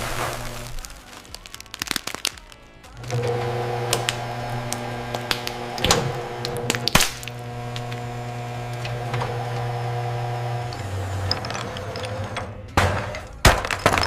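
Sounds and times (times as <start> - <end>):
sharp cracks of object breaking: 0.0 - 3.2, 6.7 - 7.4
hydraulic press humming: 3.0 - 13.2.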